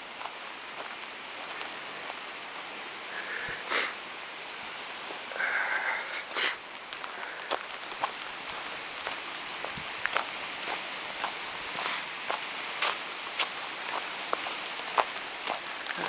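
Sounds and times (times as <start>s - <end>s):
footsteps on wet snow: 0.0s - 16.0s
person sniffing sharply: 3.2s - 4.0s, 5.6s - 6.6s.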